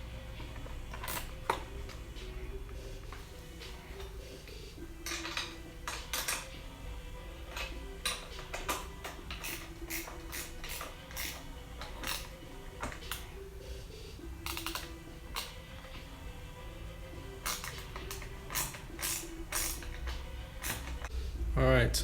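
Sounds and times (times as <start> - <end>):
background music: 0.0 - 22.0
metallic clicks of hardware and tools: 0.5 - 2.0, 2.7 - 6.6, 7.4 - 13.4, 14.1 - 16.1, 17.4 - 21.2.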